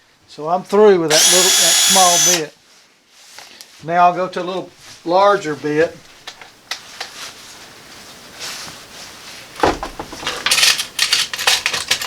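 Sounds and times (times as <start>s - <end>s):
knock: 9.6s - 10.3s
metal tools rattling: 9.7s - 12.0s.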